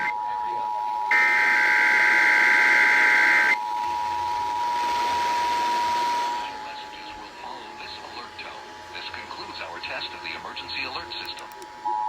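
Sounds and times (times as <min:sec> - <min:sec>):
radio hiss: 0:05.0 - 0:11.9.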